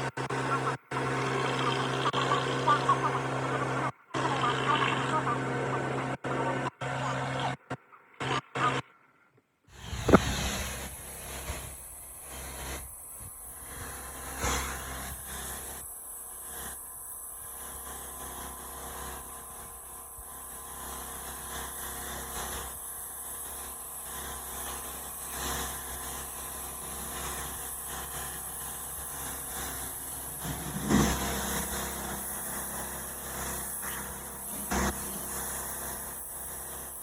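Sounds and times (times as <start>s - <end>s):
pressure washer engine running: 0.0s - 8.8s, 9.7s - 37.0s
water spray hissing: 9.8s - 15.7s, 26.9s - 36.9s.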